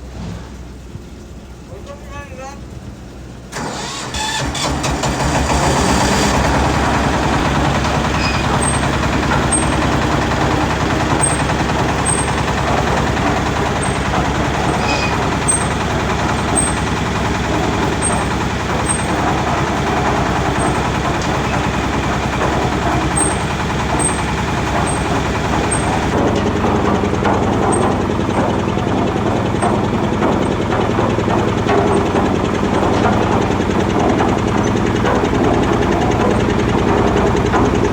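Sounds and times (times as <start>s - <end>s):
even machine noise: 0.0s - 37.9s
heavy engine running: 0.0s - 37.9s.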